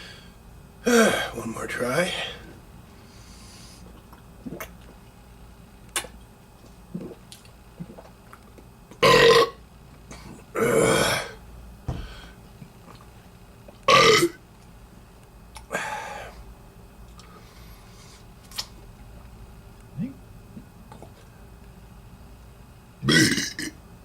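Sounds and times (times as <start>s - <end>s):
person belching: 0.9s - 1.3s, 9.0s - 9.6s, 10.6s - 11.4s, 13.9s - 14.4s, 23.0s - 23.8s.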